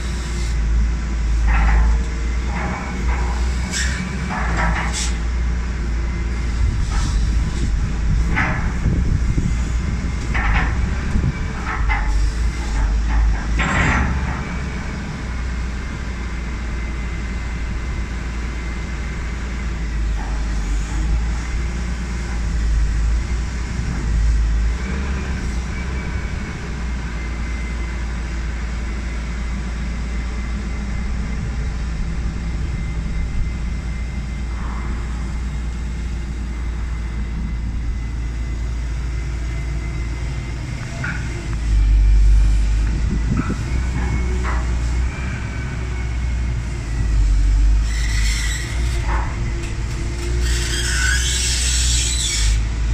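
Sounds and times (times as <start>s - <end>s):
diesel engine running: 0.0s - 52.9s
knocks and squeaks: 47.8s - 52.7s.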